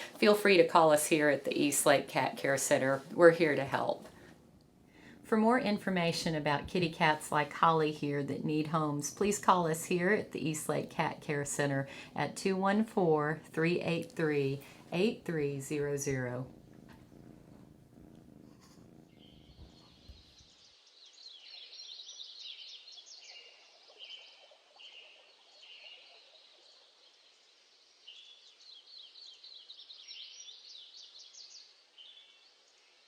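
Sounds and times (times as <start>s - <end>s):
faint birdsong chirps and trills: 19.0s - 33.0s.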